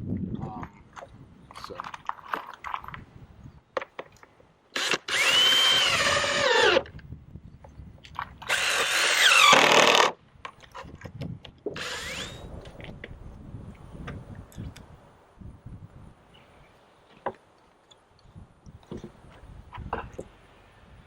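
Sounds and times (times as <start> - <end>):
power drill driving screws: 4.8 - 6.9, 8.4 - 10.2, 11.8 - 12.4.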